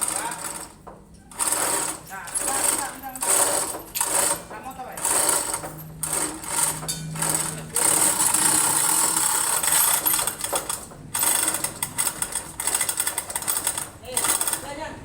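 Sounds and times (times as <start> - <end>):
ratchet mechanism clattering: 1.4 - 14.7.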